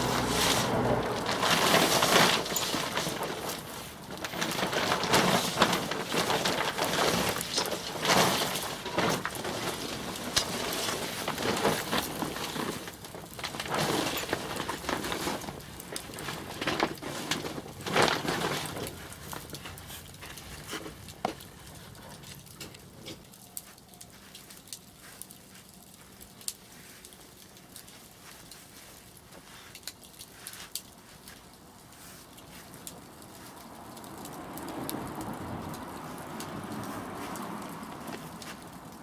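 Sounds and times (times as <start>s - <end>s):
rustling and knocking: 0.0s - 23.3s
wood fire crackling: 0.0s - 39.0s.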